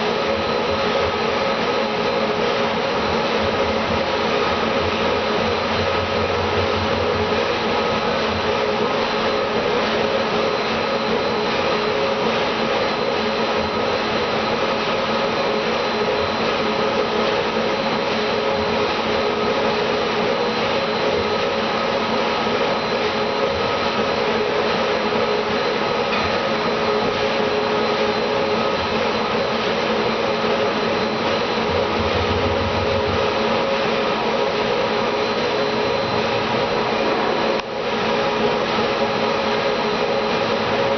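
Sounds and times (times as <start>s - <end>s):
motor-driven machine running: 30.6s - 37.9s.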